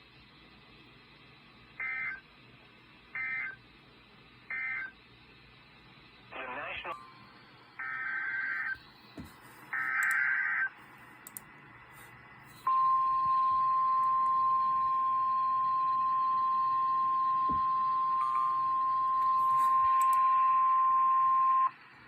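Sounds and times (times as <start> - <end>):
steady warning alarm tone: 12.6 - 21.8.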